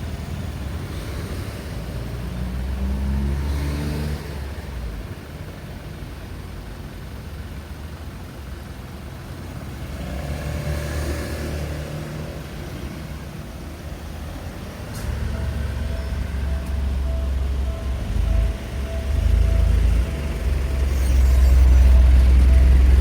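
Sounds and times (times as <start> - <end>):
vehicle engines passing: 0.0 - 5.2, 7.9 - 23.0.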